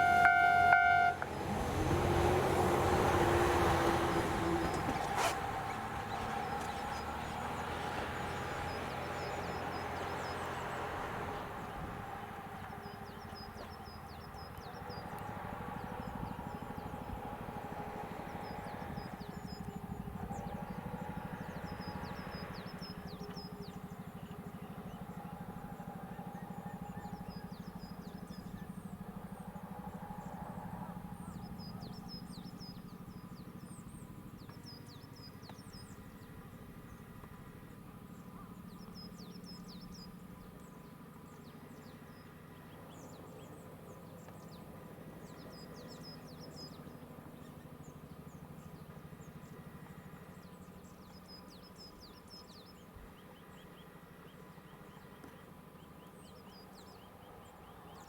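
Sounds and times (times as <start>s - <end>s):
diesel railcar engine humming: 0.0s - 58.0s
small birds chirping: 4.1s - 11.4s.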